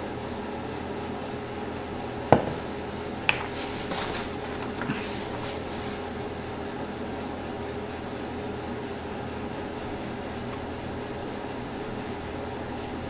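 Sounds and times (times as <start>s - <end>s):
steady low hum: 0.0s - 13.0s
object knocking on bench: 2.3s - 3.6s.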